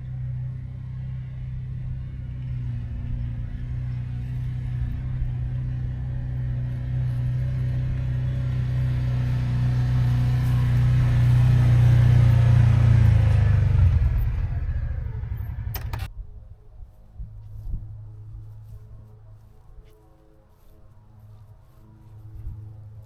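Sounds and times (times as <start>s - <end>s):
farm machine engine rumbling: 0.0s - 16.1s.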